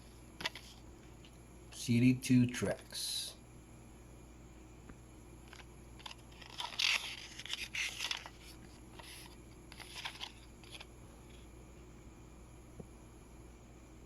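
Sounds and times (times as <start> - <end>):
plastic packaging crinkling: 5.5 - 10.9.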